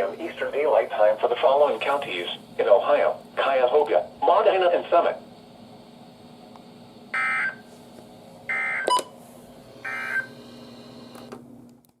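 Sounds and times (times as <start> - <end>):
buzzy digital data tones: 9.9 - 10.3.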